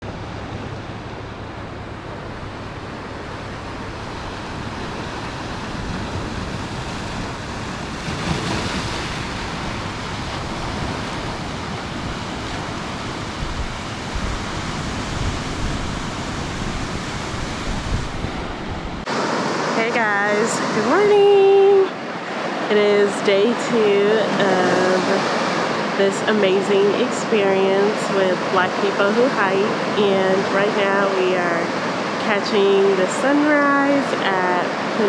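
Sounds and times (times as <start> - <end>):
ocean surf washing ashore: 0.0 - 35.0
wave breaking: 0.0 - 35.0
wind rumbling on microphone: 0.0 - 35.0.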